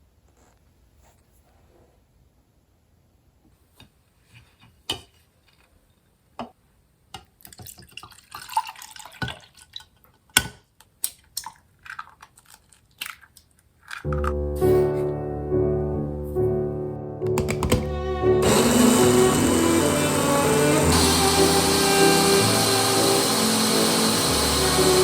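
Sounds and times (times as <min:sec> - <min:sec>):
trickling water: 0:07.4 - 0:10.2.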